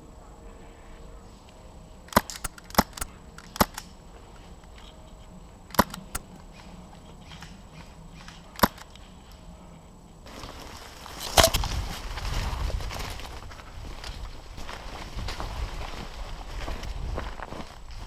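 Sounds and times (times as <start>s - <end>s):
airsoft guns firing: 2.1s - 3.9s, 5.7s - 6.2s.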